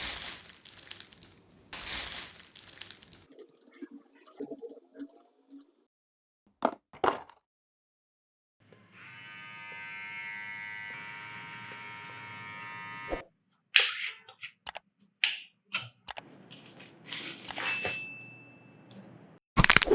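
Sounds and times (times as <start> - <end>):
electric trimmer motor buzzing: 8.8 - 13.2.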